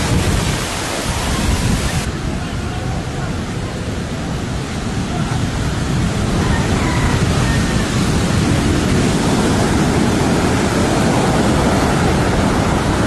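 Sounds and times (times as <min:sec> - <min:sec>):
ocean waves crashing: 0:00.0 - 0:13.0.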